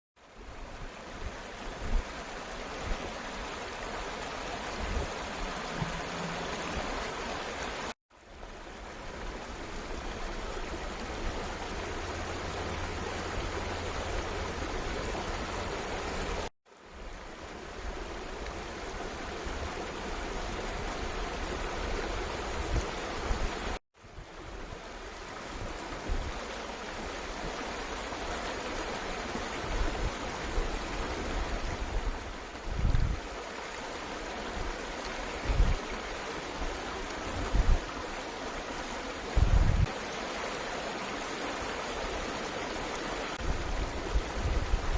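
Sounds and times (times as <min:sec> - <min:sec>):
stream flowing: 0:00.2 - 0:44.9
faint low knocks: 0:05.4 - 0:07.2.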